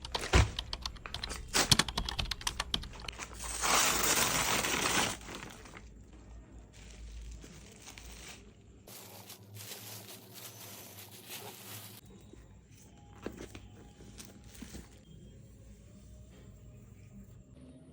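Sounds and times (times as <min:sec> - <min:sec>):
packaging rustling: 0:00.1 - 0:06.0, 0:06.7 - 0:12.0
packaging crinkling and crackling: 0:00.1 - 0:12.0
packaging tearing: 0:02.9 - 0:05.8, 0:06.8 - 0:12.0.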